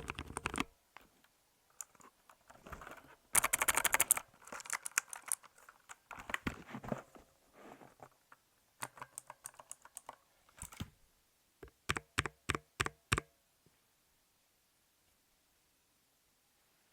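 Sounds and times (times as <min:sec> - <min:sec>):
mechanical keyboard typing: 0:00.0 - 0:00.7, 0:01.8 - 0:06.4, 0:08.8 - 0:10.9, 0:11.6 - 0:13.3.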